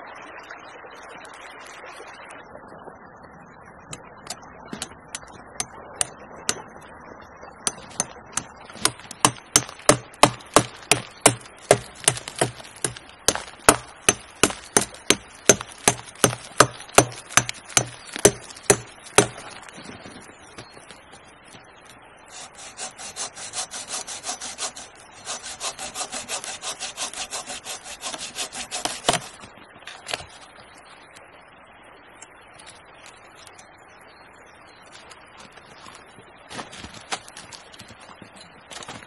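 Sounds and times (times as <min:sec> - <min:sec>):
axe chopping firewood: 0:07.7 - 0:19.7, 0:22.4 - 0:29.5.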